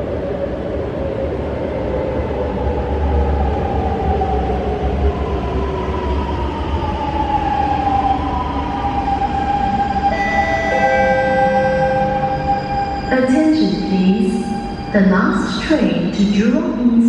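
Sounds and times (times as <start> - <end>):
low rumble of train: 0.0 - 17.0
steady higher tones: 9.7 - 15.7.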